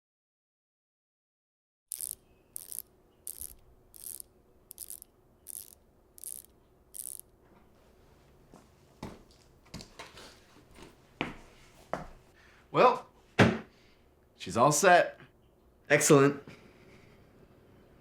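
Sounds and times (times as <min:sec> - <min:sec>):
ratcheting strokes: 0:01.9 - 0:07.3
knocks and thuds: 0:13.4 - 0:13.7.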